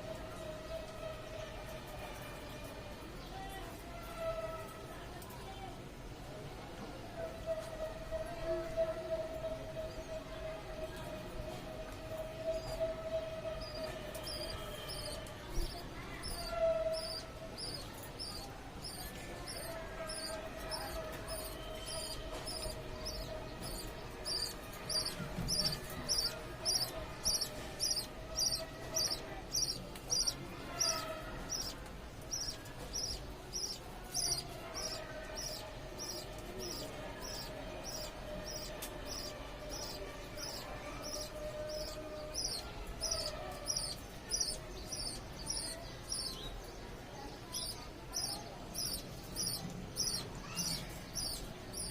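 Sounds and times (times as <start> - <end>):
parrot squeaky chirps: 13.6 - 46.4.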